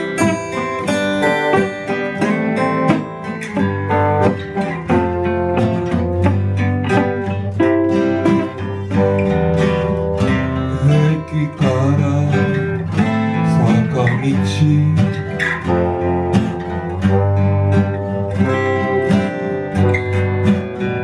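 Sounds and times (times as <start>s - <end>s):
strummed guitar chords: 0.0s - 21.0s.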